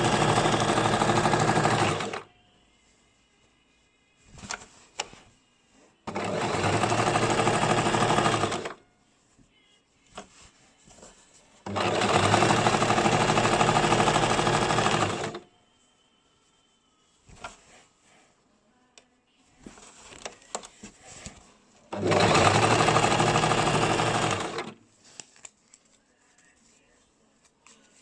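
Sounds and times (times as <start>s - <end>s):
sewing machine stitching: 0.0s - 2.3s, 6.1s - 8.8s, 11.6s - 15.4s, 21.9s - 24.8s.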